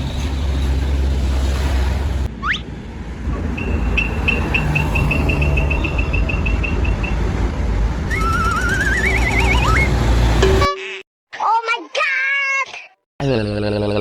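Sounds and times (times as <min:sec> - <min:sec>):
low vehicle engine rumble: 0:00.0 - 0:10.6
rising whistle: 0:03.4 - 0:07.4, 0:08.0 - 0:10.6
wavering whistle: 0:03.4 - 0:07.4, 0:08.1 - 0:10.6.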